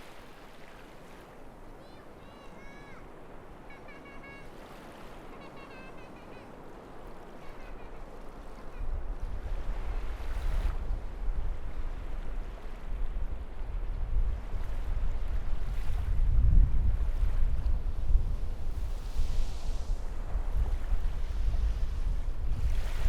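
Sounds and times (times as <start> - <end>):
waves washing on beach: 0.0 - 23.0
faint distant calls: 1.7 - 9.0
wind buffeting microphone: 6.6 - 23.0.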